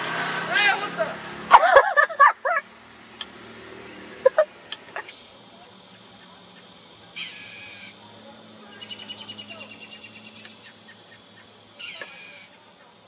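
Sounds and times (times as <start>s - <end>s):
high buzz of insects: 0.0s - 13.0s
rapid chirping trill: 5.1s - 13.0s
bird call sliding downward: 7.2s - 8.0s, 8.7s - 12.6s.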